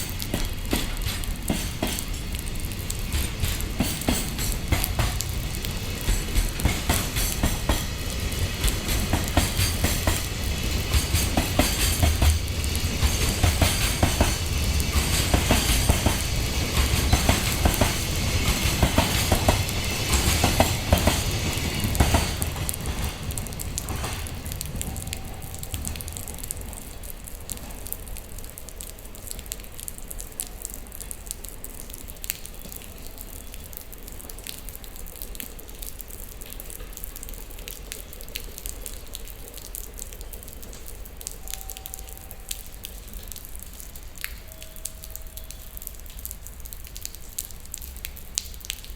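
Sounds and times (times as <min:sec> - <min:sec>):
train wheels clacking over rail joints: 0:00.0 - 0:27.9.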